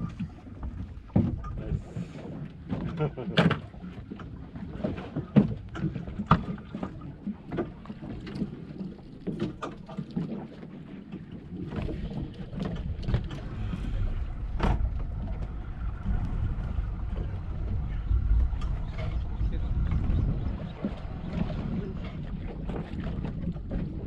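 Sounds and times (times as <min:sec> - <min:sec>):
low rumble: 0:11.5 - 0:24.0.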